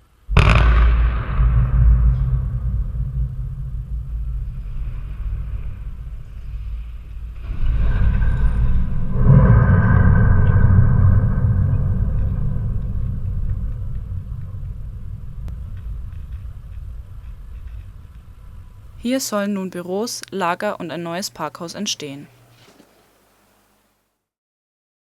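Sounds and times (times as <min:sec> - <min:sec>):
deep rumble of chimney collapsing: 0:00.0 - 0:19.0.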